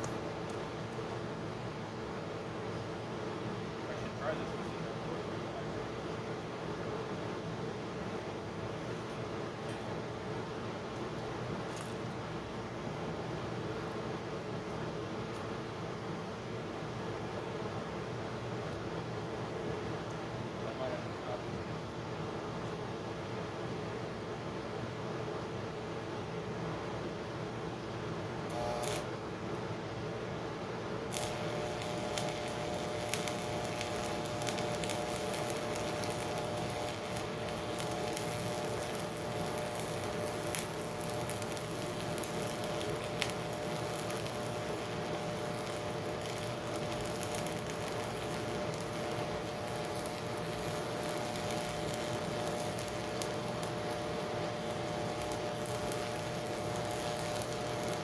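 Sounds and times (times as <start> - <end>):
electrical hum: 28.4 - 29.4, 30.1 - 58.0
welding arc crackling: 28.5 - 29.1, 31.0 - 58.0.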